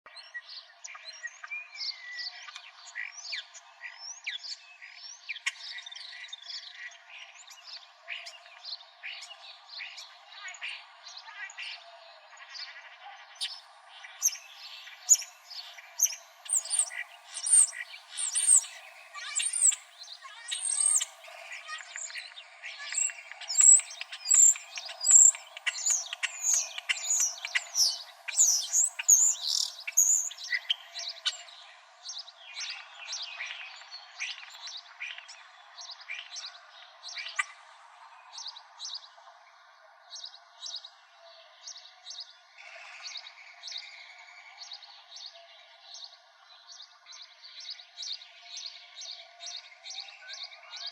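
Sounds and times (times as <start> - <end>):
small birds chirping: 0.1 - 37.6.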